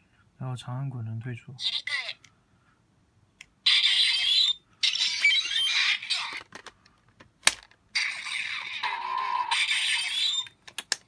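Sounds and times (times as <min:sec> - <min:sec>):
electronic toy sound effects: 0:03.6 - 0:06.6, 0:07.9 - 0:10.6.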